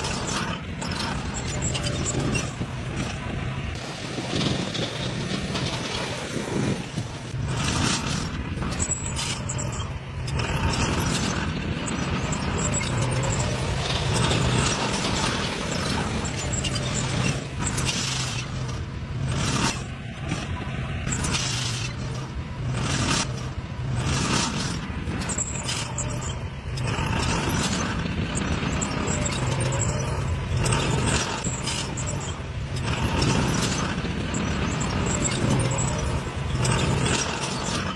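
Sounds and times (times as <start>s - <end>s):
bulldozer diesel engine running: 0.0s - 37.9s
machine clanks and knocks: 7.3s - 37.9s.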